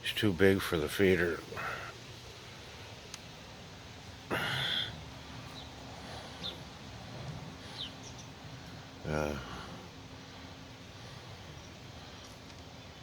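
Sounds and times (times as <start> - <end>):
faint high bird chirps: 7.7 - 8.4.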